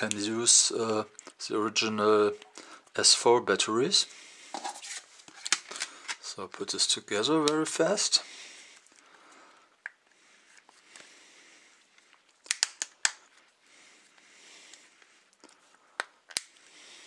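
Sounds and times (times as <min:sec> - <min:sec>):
plastic clips snapping: 0:12.4 - 0:13.2, 0:16.0 - 0:16.6.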